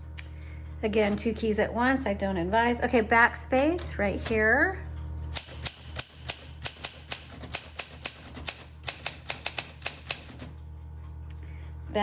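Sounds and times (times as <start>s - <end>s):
typewriter keys clacking: 1.0s - 1.2s, 5.3s - 10.5s.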